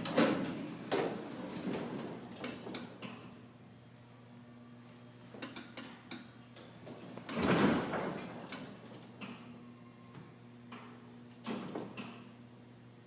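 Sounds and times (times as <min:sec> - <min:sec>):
elevator doors sliding: 0:00.0 - 0:03.0.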